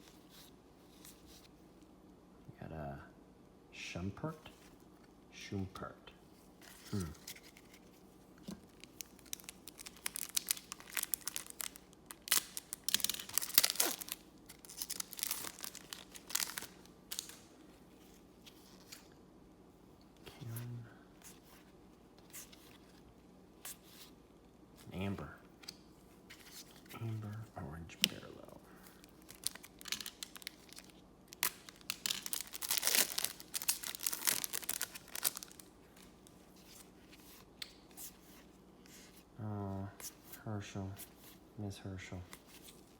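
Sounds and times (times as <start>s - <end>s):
foil wrapper crackling: 8.6s - 17.5s, 28.7s - 36.2s.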